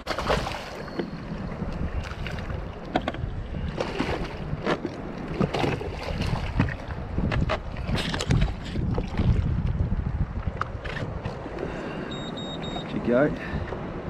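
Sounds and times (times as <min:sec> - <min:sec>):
short knocks and splashes: 0:00.0 - 0:01.1, 0:02.0 - 0:09.5
water sloshing against kayak hull: 0:00.0 - 0:13.8
wind buffeting microphone: 0:00.0 - 0:14.0.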